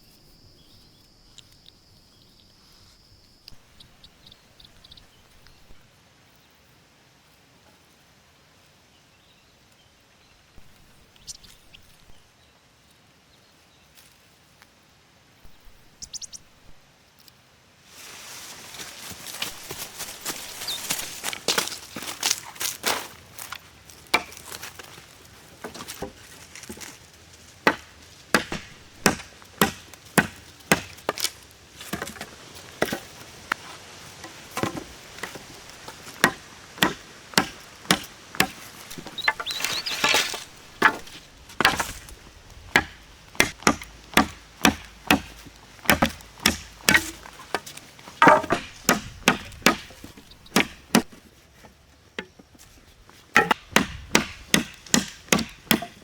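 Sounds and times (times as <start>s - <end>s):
wood chopping strokes: 19.0s - 27.0s, 27.6s - 56.0s.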